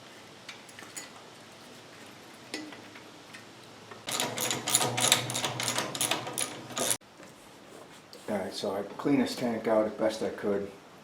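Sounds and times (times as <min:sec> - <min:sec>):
ratchet wrench clicking: 0:04.1 - 0:07.0.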